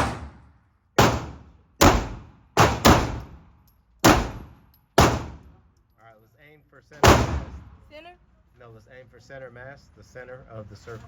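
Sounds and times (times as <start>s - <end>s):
handgun shots echoing: 4.0s - 5.4s.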